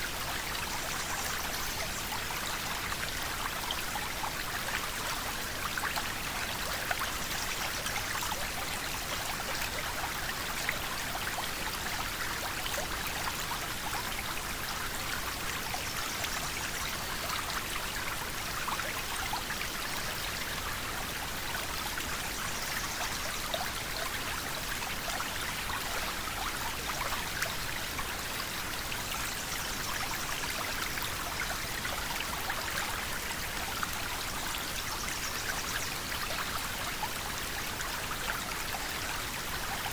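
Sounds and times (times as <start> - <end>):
water splashes and trickles: 0.0 - 39.9.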